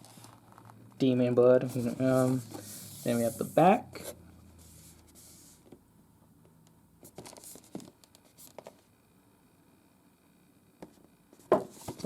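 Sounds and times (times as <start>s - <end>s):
cardboard box rustling: 11.5s - 12.0s.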